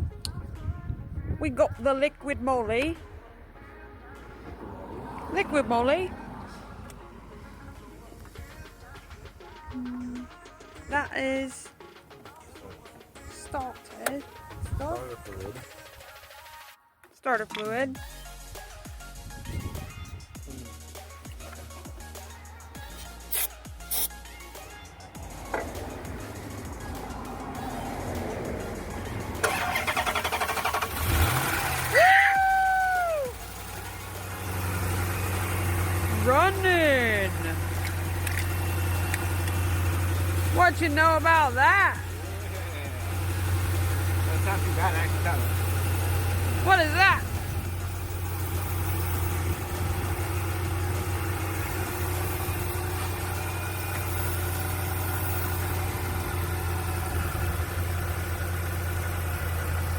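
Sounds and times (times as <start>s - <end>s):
car engine cranking and revving: 1.8s - 11.1s, 24.2s - 59.9s.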